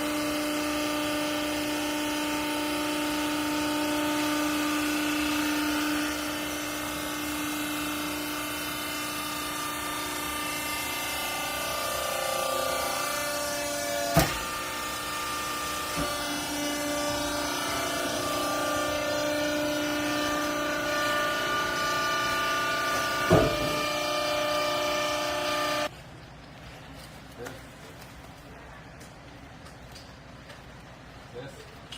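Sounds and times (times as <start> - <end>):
hydraulic pump motor humming: 0.0 - 25.9
sharp knocks: 23.2 - 24.0.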